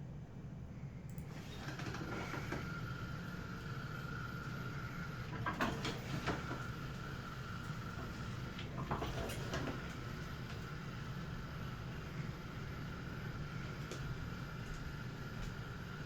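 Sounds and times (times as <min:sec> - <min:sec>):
robot vacuum motors whining: 0:01.3 - 0:15.8.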